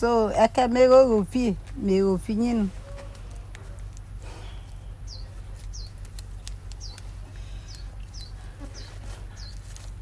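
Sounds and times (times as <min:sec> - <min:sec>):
low background rumble: 0:00.0 - 0:10.0
bird chirping: 0:04.4 - 0:09.8.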